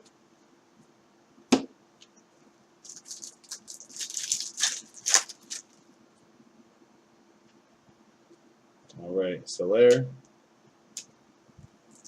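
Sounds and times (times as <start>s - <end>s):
card packs rustling and crinkling: 2.8s - 5.8s.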